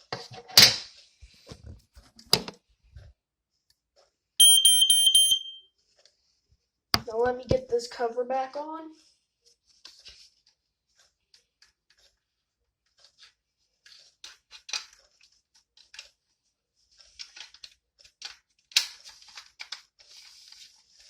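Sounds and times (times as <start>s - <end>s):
plastic clicks and scrapes: 9.6s - 21.0s.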